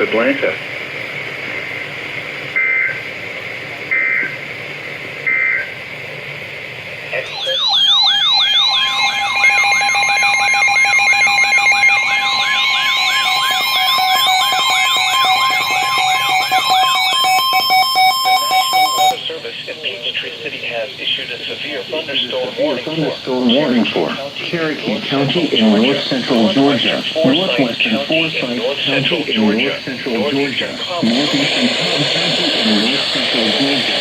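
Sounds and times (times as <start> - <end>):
loud siren-like warble: 7.2 - 19.2
screeching data code bursts: 7.2 - 19.2
steady two-tone attention signal: 7.2 - 19.2, 22.7 - 33.8.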